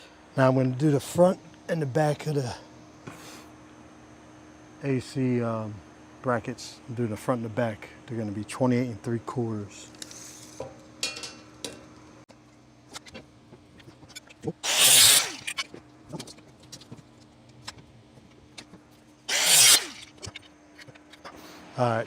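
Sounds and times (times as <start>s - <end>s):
power saw cutting metal: 14.6s - 15.6s, 19.3s - 20.2s.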